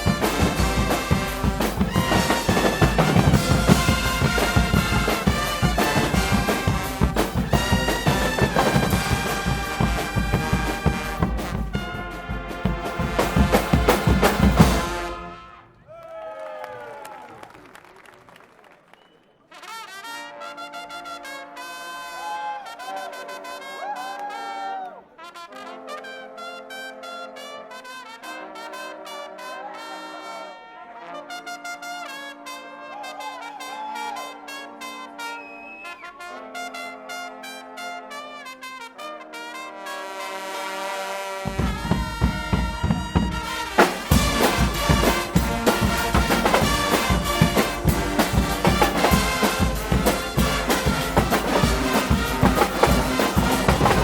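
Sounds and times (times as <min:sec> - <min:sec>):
steady drum beat: 0:00.0 - 0:15.4, 0:41.5 - 0:54.0
brass section playing: 0:00.0 - 0:15.9, 0:19.5 - 0:54.0.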